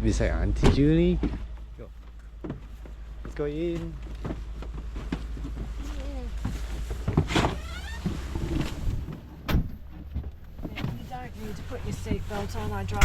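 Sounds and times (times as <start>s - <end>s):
knocks and shuffling: 1.2s - 7.4s.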